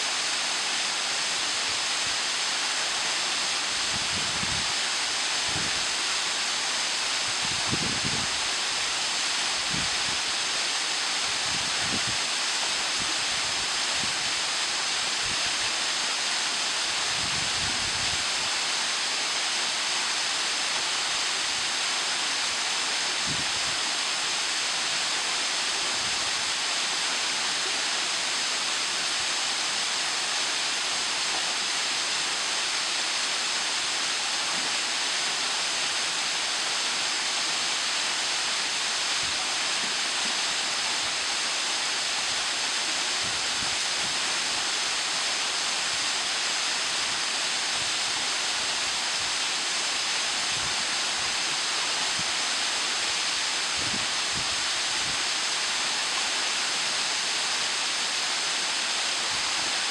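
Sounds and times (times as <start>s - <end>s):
waterfall pouring into pool: 18.2s - 59.9s.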